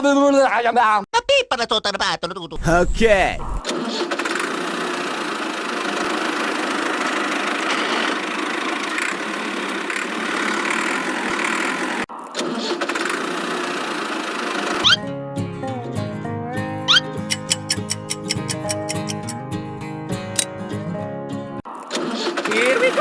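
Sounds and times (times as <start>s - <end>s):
small engine running: 3.7s - 12.0s, 12.8s - 15.0s.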